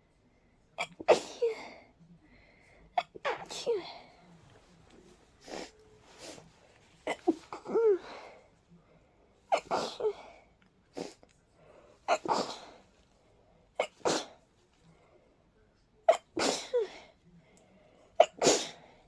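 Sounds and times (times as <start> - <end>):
person sneezing: 16.1 - 17.1, 18.2 - 18.9.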